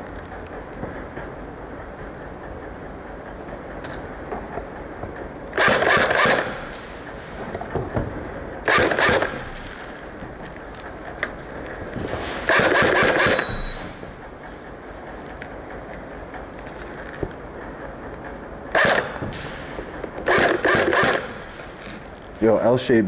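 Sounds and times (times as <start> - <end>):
airsoft gun rapid-fire bursts: 5.6 - 6.6, 8.7 - 9.6, 12.5 - 13.5, 18.7 - 19.2, 20.3 - 21.4.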